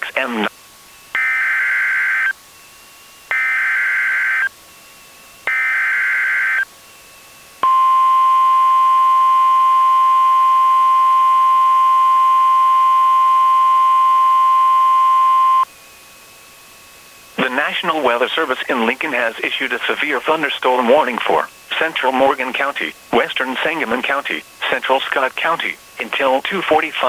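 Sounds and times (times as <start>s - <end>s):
steady warning alarm tone: 1.2s - 2.4s, 3.3s - 4.5s, 5.4s - 6.7s, 7.6s - 15.7s.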